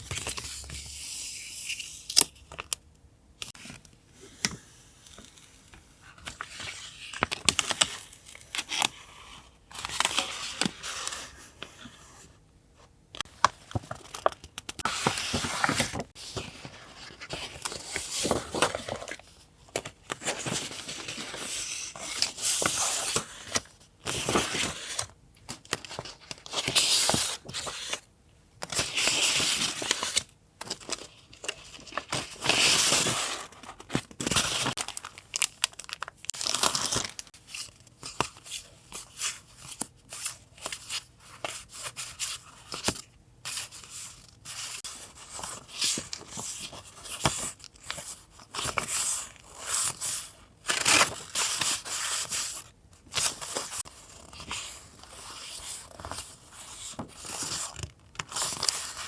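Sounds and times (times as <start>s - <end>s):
paper rustling: 13.2s - 28.0s.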